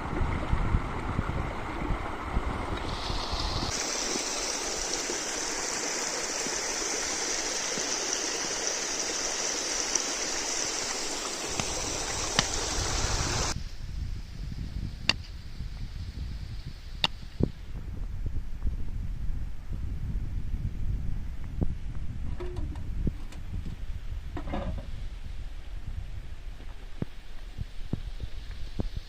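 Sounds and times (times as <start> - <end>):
spring water running: 0.0 - 13.6.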